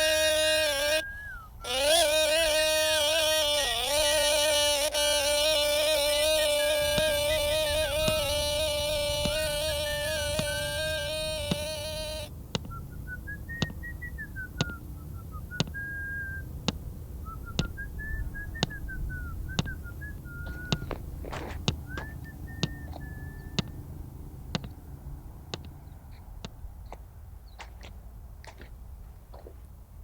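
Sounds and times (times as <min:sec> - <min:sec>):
person whistling a slow tune: 0:00.7 - 0:01.7, 0:12.6 - 0:16.5, 0:17.2 - 0:21.0, 0:21.8 - 0:23.7
sharp ticks: 0:01.6 - 0:16.0, 0:16.6 - 0:23.9, 0:24.5 - 0:24.8, 0:25.5 - 0:25.8.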